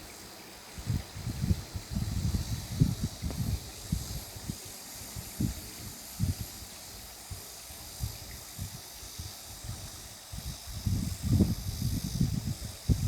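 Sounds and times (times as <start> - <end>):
soft hiss: 0.0 - 13.0
wind buffeting microphone: 0.8 - 13.0.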